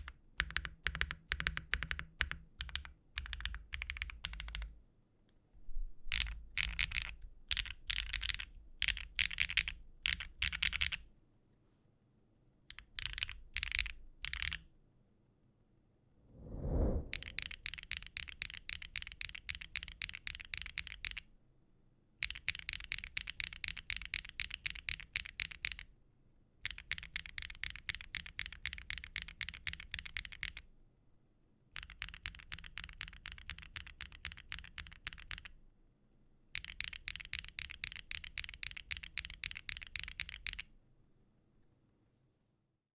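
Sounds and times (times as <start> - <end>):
mechanical keyboard typing: 0.0 - 4.7, 6.1 - 11.0, 12.7 - 14.6, 17.1 - 21.2, 22.2 - 25.8, 26.6 - 30.6, 31.8 - 35.5, 36.6 - 40.7.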